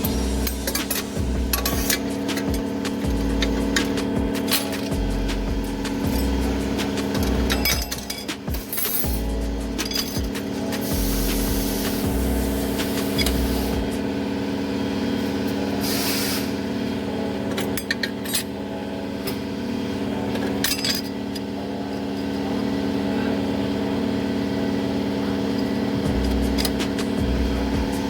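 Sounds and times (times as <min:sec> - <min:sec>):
steady machine hum: 0:00.0 - 0:28.0
metal plates clinking: 0:00.1 - 0:05.0, 0:05.9 - 0:09.2.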